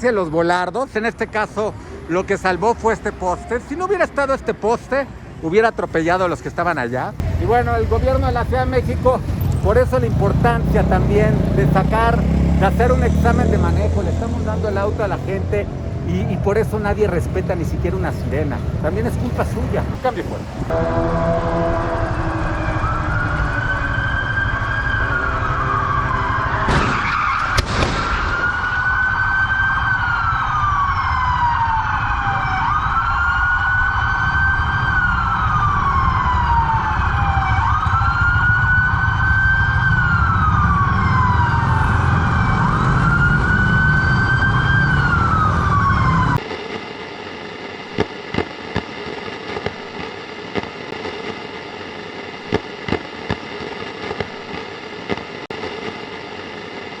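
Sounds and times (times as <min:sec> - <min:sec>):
low traffic rumble: 0:00.0 - 0:51.0
emergency siren wailing: 0:07.2 - 0:46.5.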